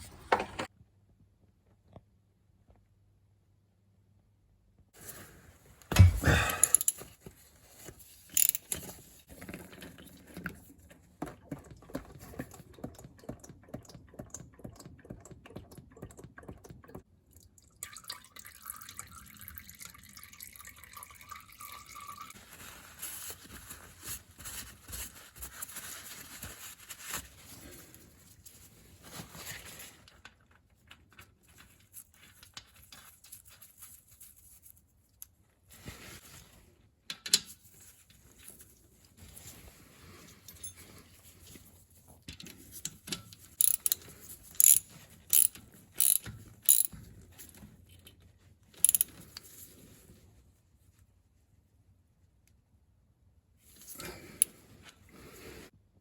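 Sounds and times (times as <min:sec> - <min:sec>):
oil trickling into container: 0:11.9 - 0:22.4.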